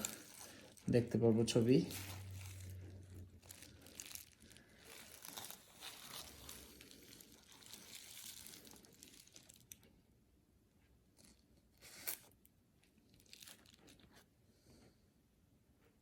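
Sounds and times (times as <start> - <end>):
faint rustling and crinkling: 0.0 - 16.0.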